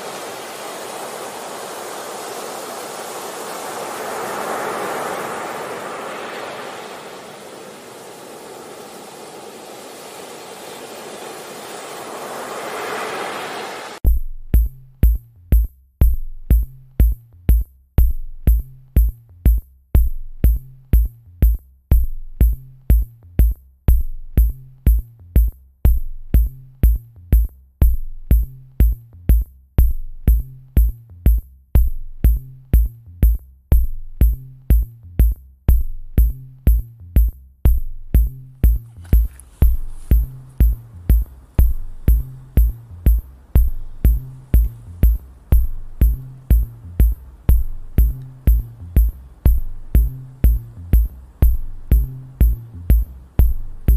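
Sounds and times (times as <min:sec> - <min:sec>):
swelling electronic hiss: 0:00.0 - 0:14.0, 0:38.8 - 0:53.9
bass line: 0:14.0 - 0:53.9
drum machine kick beat: 0:14.0 - 0:53.9
clicking hi-hats: 0:38.2 - 0:53.9.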